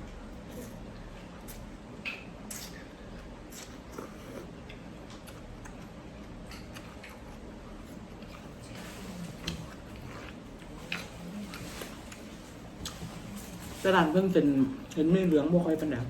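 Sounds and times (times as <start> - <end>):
low steady hum: 0.0 - 16.0
chewing mouth clicks and smacks: 1.4 - 2.9, 3.5 - 7.4.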